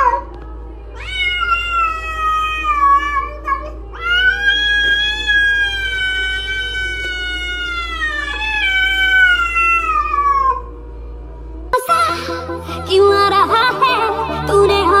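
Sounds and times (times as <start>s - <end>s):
cat meowing: 1.0s - 10.8s.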